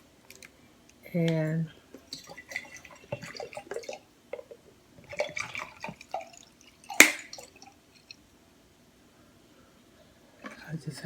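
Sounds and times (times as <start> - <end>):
liquid drips and clicks: 1.2 - 8.2
water moving in a glass jar: 1.2 - 8.2.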